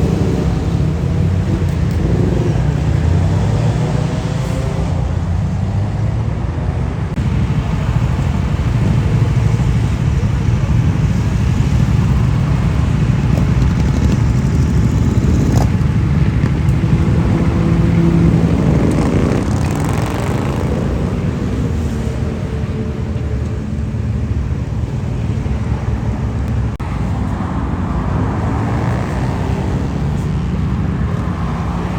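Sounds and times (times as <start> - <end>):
motorcycle engine running: 7.2 - 25.4.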